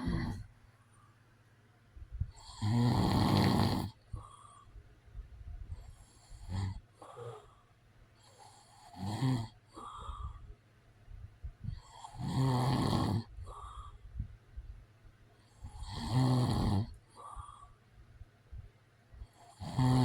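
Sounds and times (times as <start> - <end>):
man snoring: 0.0 - 0.4, 2.4 - 4.3, 6.2 - 7.5, 8.3 - 10.2, 11.8 - 13.8, 15.7 - 17.6, 19.3 - 20.0
soft breathing: 0.0 - 9.0, 9.7 - 12.2, 13.2 - 16.1, 16.8 - 19.5.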